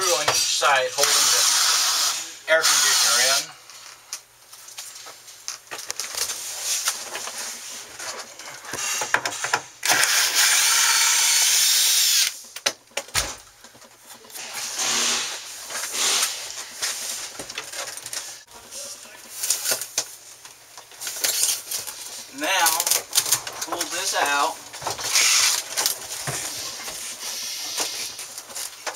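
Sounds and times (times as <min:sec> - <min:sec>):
cordless screw gun running: 0:09.8 - 0:12.4, 0:25.1 - 0:25.6.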